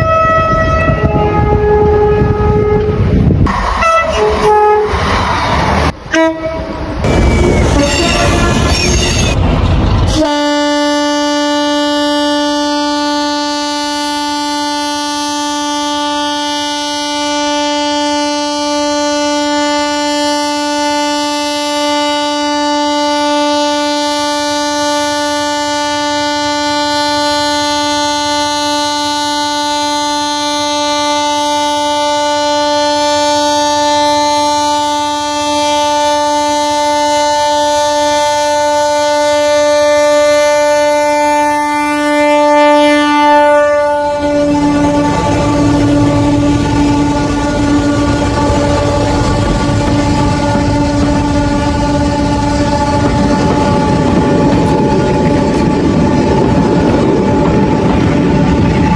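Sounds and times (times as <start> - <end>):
train horn steady note: 0.0 - 3.2, 3.8 - 5.0, 6.1 - 7.2, 10.1 - 58.9
loud noisy passage: 3.0 - 10.0.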